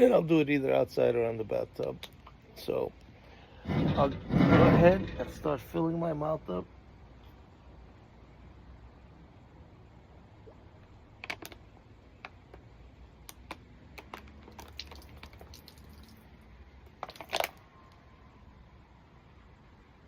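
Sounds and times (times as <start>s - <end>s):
plastic bottle crinkling: 13.3s - 16.2s, 16.8s - 17.6s.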